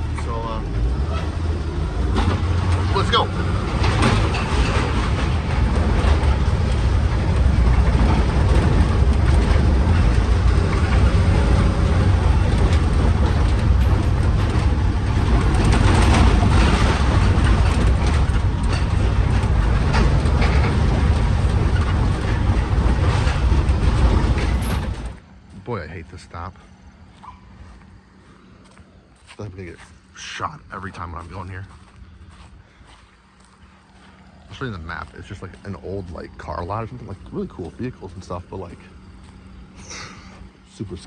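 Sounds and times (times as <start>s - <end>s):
knocks and rattles in cab: 0.0s - 25.2s
truck engine and road rumble: 0.0s - 41.0s.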